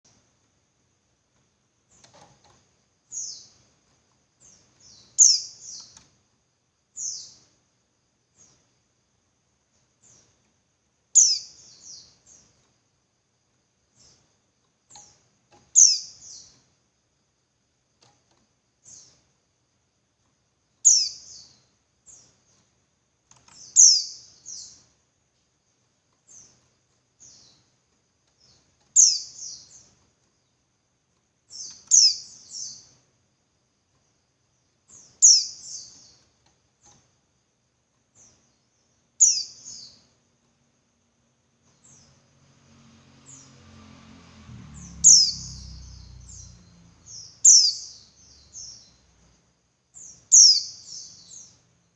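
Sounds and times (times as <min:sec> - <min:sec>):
bird high downward-sliding calls: 0:44.8 - 0:48.0.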